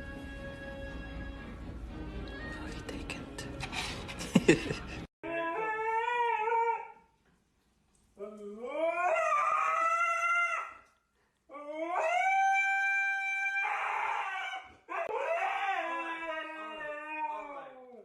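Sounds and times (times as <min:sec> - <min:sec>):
dog howling: 0:05.2 - 0:07.0, 0:08.2 - 0:10.9, 0:11.5 - 0:18.0.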